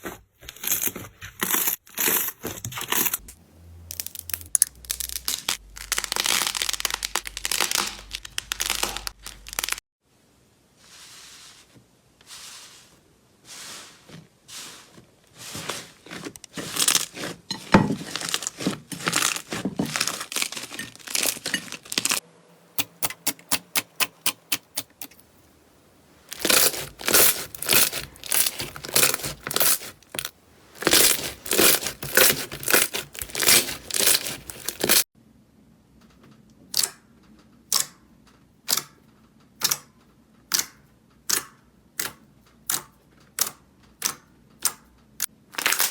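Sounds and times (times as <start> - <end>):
crunchy slime crackling and popping: 3.9 - 9.8, 16.0 - 22.2, 26.1 - 35.1, 45.3 - 45.9.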